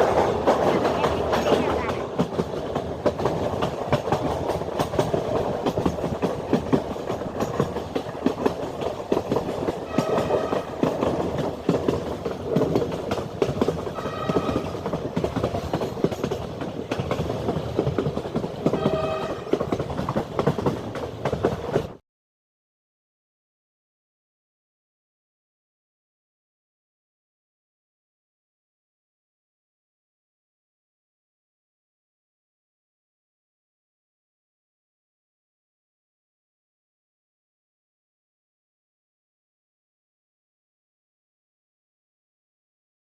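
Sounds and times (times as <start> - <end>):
train wheels clattering over rails: 0.0 - 22.0.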